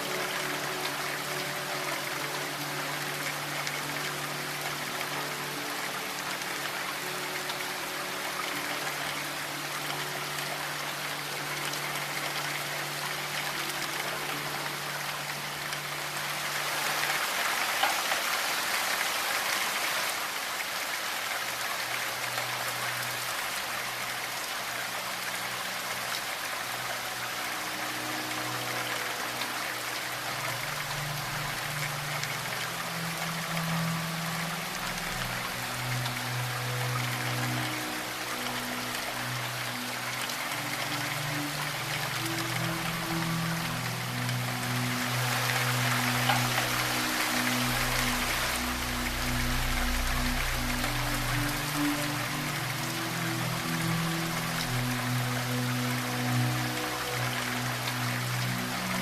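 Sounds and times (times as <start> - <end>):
steady rain: 0.0 - 59.0
ambient drone of held tones: 22.2 - 59.0.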